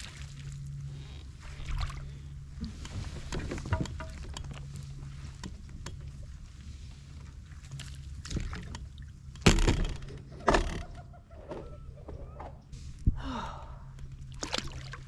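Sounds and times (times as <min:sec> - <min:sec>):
water sloshing around kayak: 0:00.0 - 0:10.4, 0:14.1 - 0:15.0
small knocks: 0:02.8 - 0:04.7.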